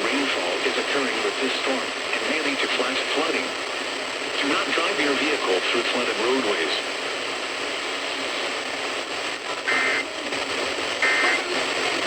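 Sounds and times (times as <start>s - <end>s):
radio hiss: 0.0s - 12.0s
two-tone digital screeches: 9.7s - 10.0s, 11.0s - 11.4s.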